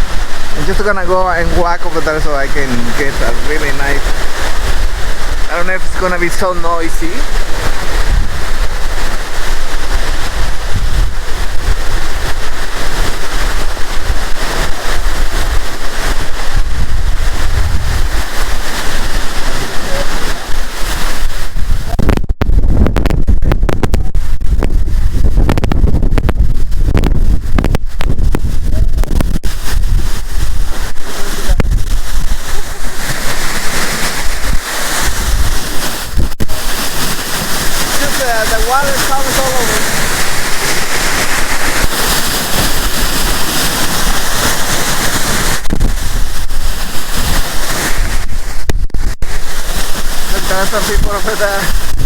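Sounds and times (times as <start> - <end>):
waterfall roaring: 0.0 - 22.0, 30.2 - 45.7, 50.2 - 51.8
wind buffeting microphone: 0.0 - 52.0.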